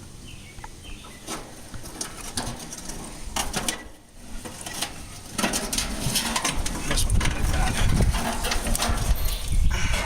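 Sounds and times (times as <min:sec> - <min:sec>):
bird chirping: 0:00.2 - 0:01.4
grill grates clanking: 0:01.2 - 0:10.0.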